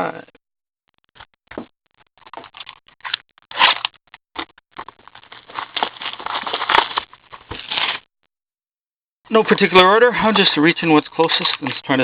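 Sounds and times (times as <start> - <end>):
foil wrappers crinkling and tearing: 2.2 - 8.0
cards being handled: 2.3 - 8.0.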